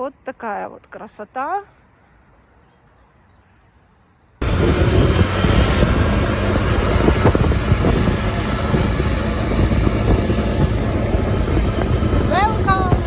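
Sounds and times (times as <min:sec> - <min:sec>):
road noise: 0:00.0 - 0:13.0
motorbike engine: 0:04.4 - 0:13.0
wind buffeting microphone: 0:04.4 - 0:13.0.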